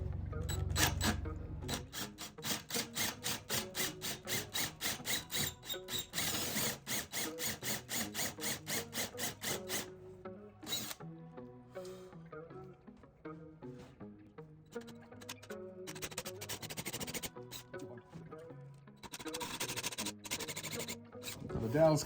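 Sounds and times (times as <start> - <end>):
background music: 0.0 - 22.0.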